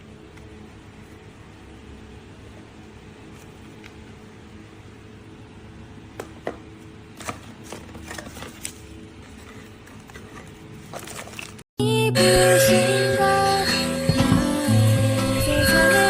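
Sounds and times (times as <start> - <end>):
handheld vacuum cleaner humming: 12.2 - 16.0.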